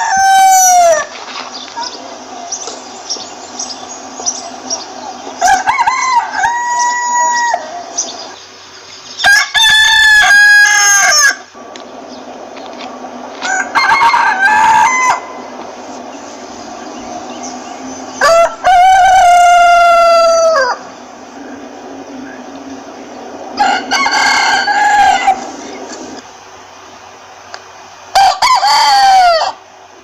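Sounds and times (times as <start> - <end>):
rooster crowing: 0.0 - 1.1, 5.1 - 8.2, 9.2 - 11.6, 13.4 - 16.1, 16.9 - 26.2, 28.1 - 29.6.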